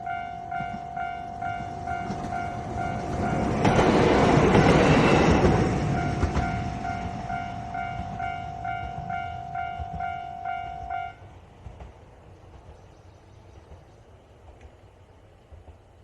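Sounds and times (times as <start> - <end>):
level crossing warning bell: 0.0 - 11.2
diesel railcar rumble: 0.0 - 16.0.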